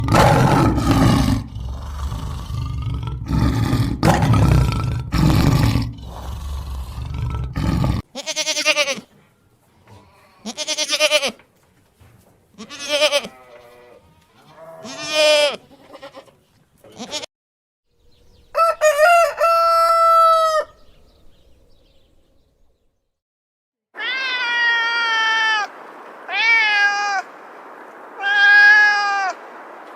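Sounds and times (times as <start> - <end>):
pitched fowl calls: 18.5 - 21.0, 24.0 - 29.9
rooster crowing: 18.5 - 21.0, 24.0 - 25.7, 28.2 - 29.5.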